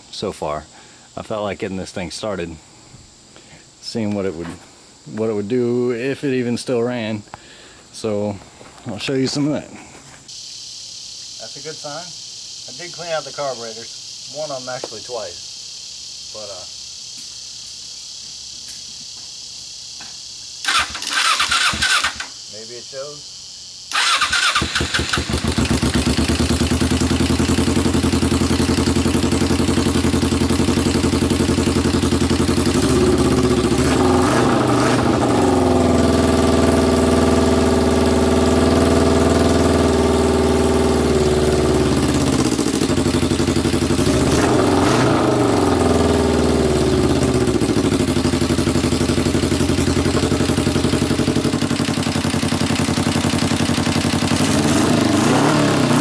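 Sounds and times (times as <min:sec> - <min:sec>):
motorcycle engine revving: 0:20.6 - 0:22.3, 0:23.9 - 0:56.0.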